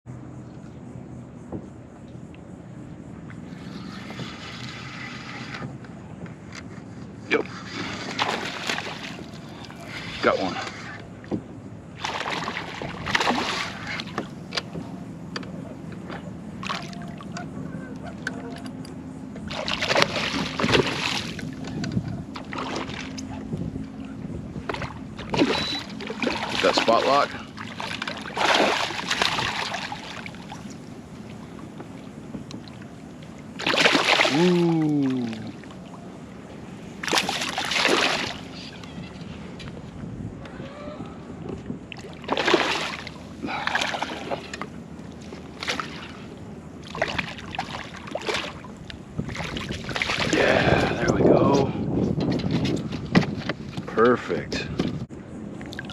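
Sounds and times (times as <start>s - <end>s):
wind: 0.0s - 55.9s
low steady hum: 0.1s - 55.9s
flowing water: 7.3s - 51.8s, 55.6s - 55.9s
fish splashing and knocking: 8.1s - 9.3s, 11.2s - 15.0s, 19.4s - 23.2s, 24.6s - 30.7s, 33.6s - 35.3s, 37.0s - 38.5s, 42.0s - 44.7s, 46.8s - 48.6s, 49.2s - 50.3s.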